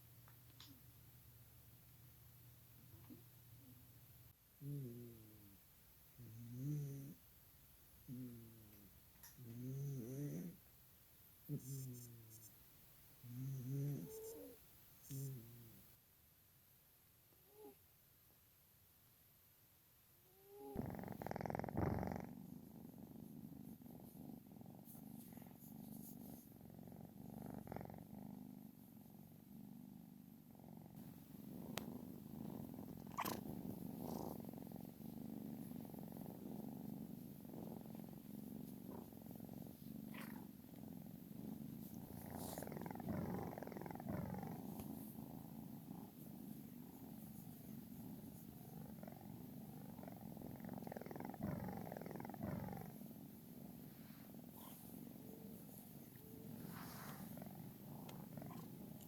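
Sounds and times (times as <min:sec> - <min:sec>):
cat snoring: 0:06.2 - 0:07.2, 0:09.4 - 0:10.6, 0:13.3 - 0:15.7, 0:20.4 - 0:59.0.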